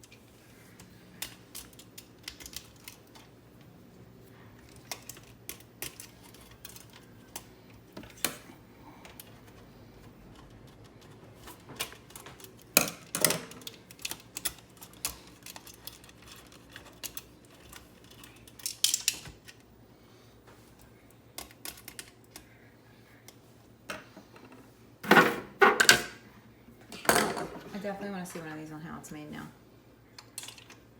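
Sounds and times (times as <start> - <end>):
plastic parts clicking and tapping: 0.8 - 3.3, 4.6 - 8.4, 9.0 - 19.6, 21.3 - 22.5, 30.2 - 30.8
plastic parts clattering: 10.8 - 19.6, 30.2 - 30.8.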